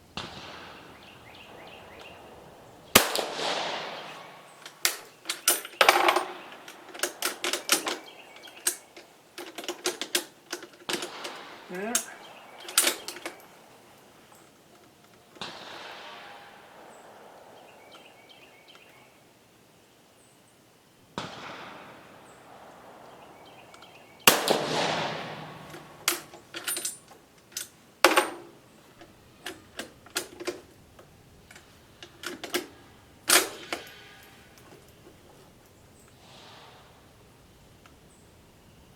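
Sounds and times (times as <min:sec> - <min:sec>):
rifle shots: 0:00.0 - 0:18.8, 0:21.0 - 0:38.7
metallic rifle bolt clicks: 0:01.9 - 0:15.8, 0:23.7 - 0:36.6.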